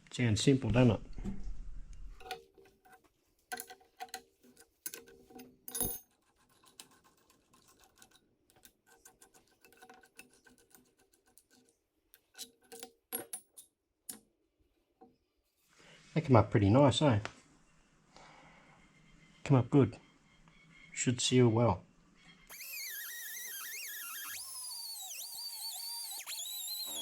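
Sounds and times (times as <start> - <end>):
metal parts and tools clinking: 2.1 - 14.2.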